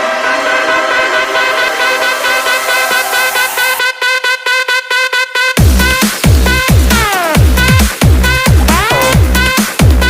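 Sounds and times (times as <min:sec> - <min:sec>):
upbeat electronic music: 0:00.0 - 0:10.0.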